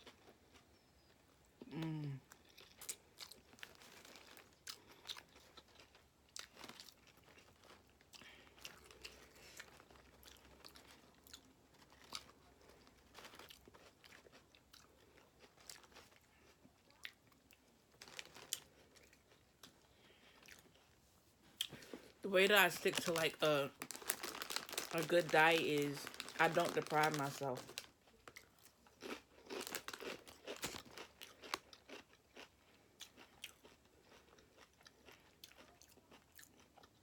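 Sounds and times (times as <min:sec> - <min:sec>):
chewing and biting food: 0:00.0 - 0:21.0, 0:23.0 - 0:37.0
soft crunches: 0:22.8 - 0:31.6.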